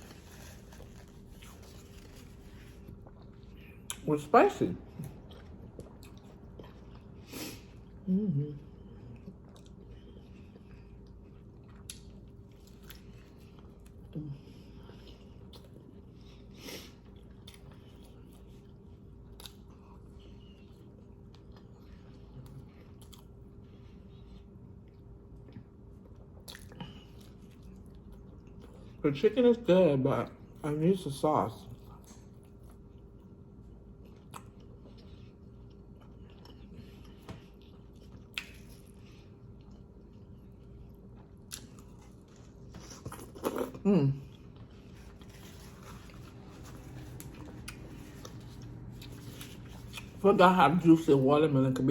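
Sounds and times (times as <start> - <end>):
person chewing food: 0.0 - 4.0, 4.8 - 29.0, 31.7 - 50.3
steady low hum: 0.0 - 51.9.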